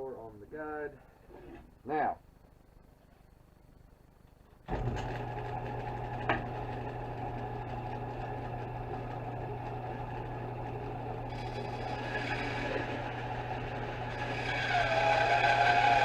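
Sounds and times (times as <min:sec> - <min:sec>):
bandsaw running: 0:04.7 - 0:16.0.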